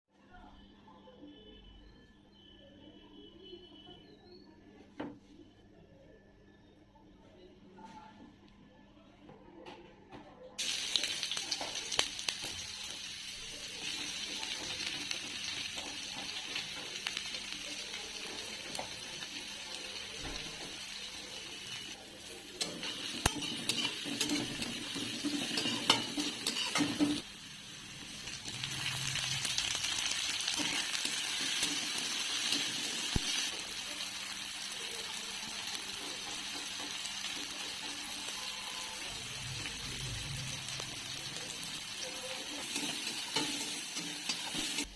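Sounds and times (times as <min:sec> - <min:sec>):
food sizzling in a pan: 0:10.6 - 0:44.9
spatula scraping a pan: 0:22.6 - 0:27.2.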